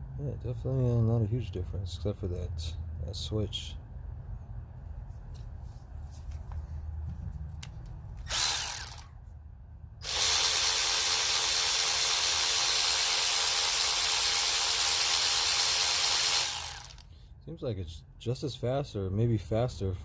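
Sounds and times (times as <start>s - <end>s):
electric ratchet motor spinning: 8.2s - 9.1s, 10.0s - 17.1s.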